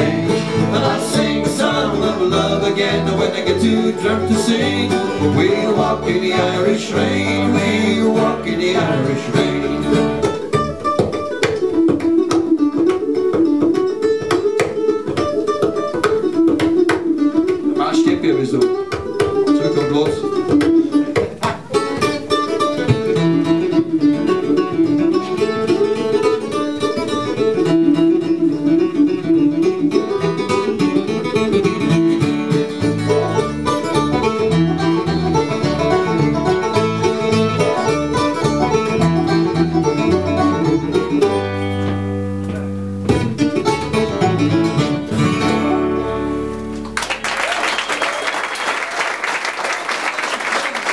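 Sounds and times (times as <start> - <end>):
bass line: 0.0 - 10.9, 31.6 - 47.0
banjo picking: 0.0 - 47.1
acoustic guitar: 0.0 - 47.3.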